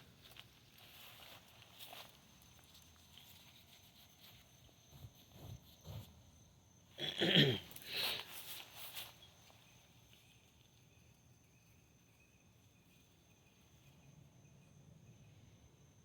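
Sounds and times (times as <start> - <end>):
soft rustles: 0.0 - 6.2, 7.8 - 11.3
high insect trill: 0.0 - 16.0.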